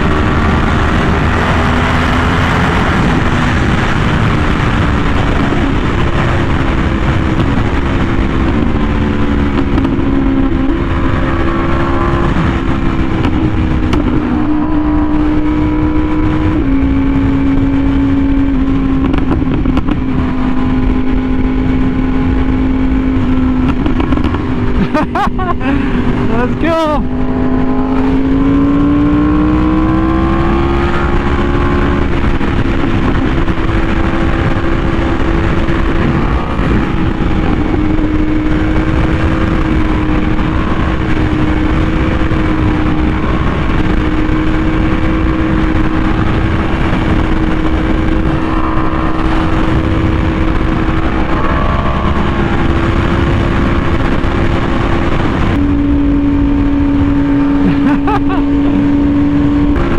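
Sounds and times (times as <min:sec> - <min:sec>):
motorcycle engine revving: 0:00.0 - 0:59.9
wind noise rushing: 0:00.0 - 0:59.9.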